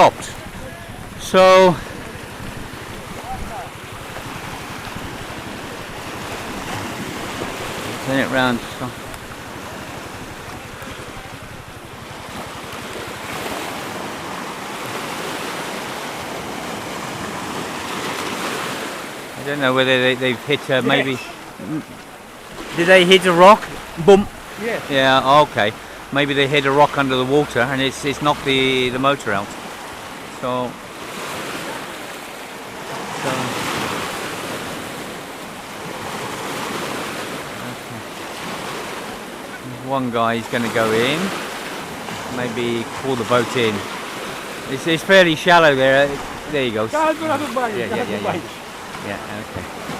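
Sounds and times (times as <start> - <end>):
wind buffeting microphone: 0.0 - 18.7, 43.9 - 47.8
sea waves washing on shore: 0.0 - 49.9.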